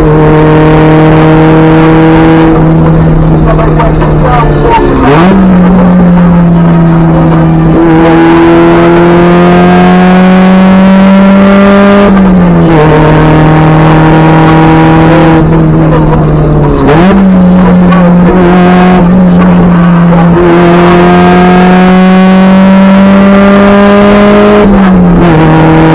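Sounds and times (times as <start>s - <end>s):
car engine revving under load: 0.0s - 25.9s.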